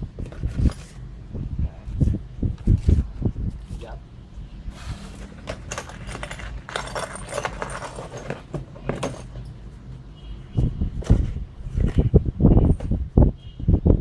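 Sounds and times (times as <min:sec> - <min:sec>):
small metal parts clinking: 0:05.1 - 0:09.7.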